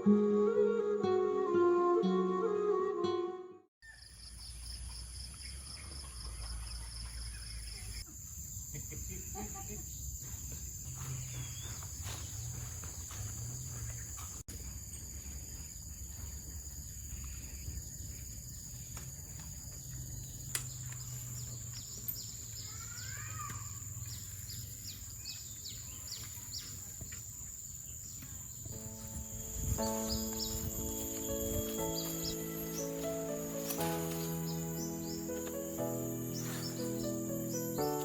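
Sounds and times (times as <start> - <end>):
bird chirps: 3.8 - 8.1, 11.0 - 12.7, 16.1 - 38.0
high-pitched insect drone: 28.8 - 38.0.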